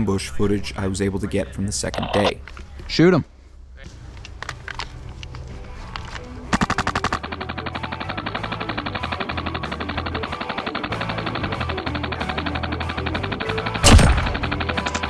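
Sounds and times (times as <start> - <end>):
airsoft rifle firing: 6.5 - 15.0.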